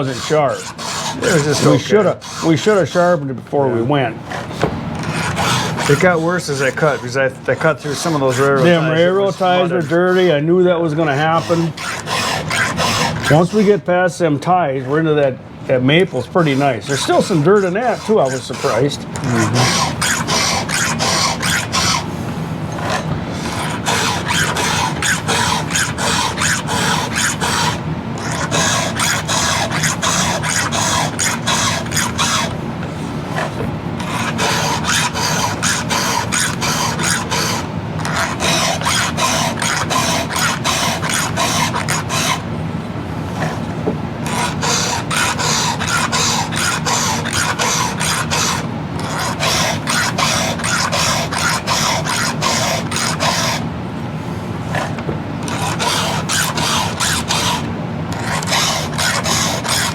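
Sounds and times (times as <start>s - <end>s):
file sharpening chain: 0.0s - 3.0s, 11.1s - 13.7s, 16.4s - 22.0s, 22.7s - 32.6s, 33.4s - 42.4s, 43.4s - 53.6s, 54.8s - 59.9s.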